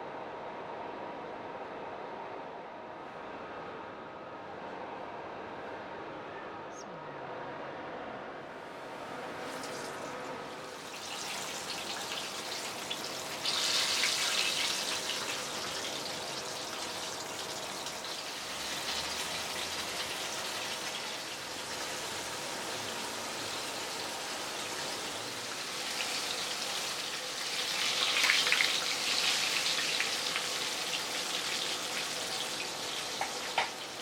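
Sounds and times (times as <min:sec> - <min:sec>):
food sizzling in hot oil: 0:09.0 - 0:34.0.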